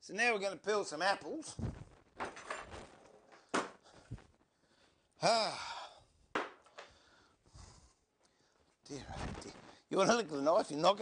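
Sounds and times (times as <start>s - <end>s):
person sighing: 5.2s - 6.0s.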